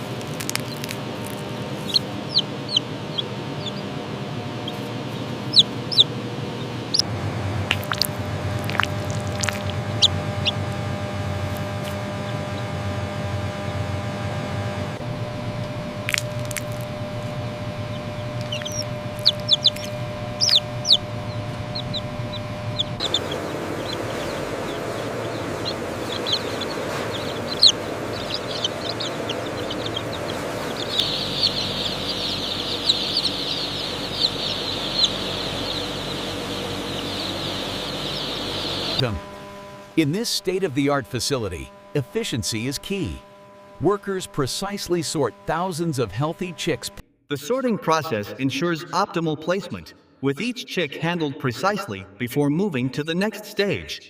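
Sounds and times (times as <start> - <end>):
chicks peeping: 0.0 - 7.1, 7.7 - 14.0, 15.6 - 39.1
steady machine hum: 0.0 - 47.0.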